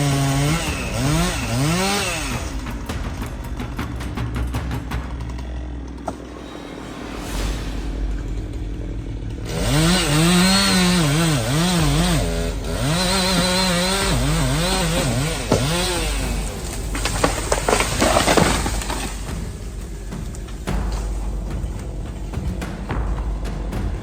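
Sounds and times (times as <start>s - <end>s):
chainsaw revving: 9.5s - 19.3s
sharp cracks and knocks: 12.3s - 23.8s.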